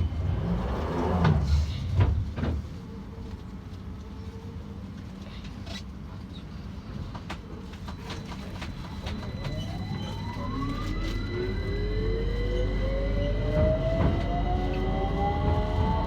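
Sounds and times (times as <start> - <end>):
low hum in train carriage: 0.0 - 16.0
train doors closing: 7.0 - 16.0.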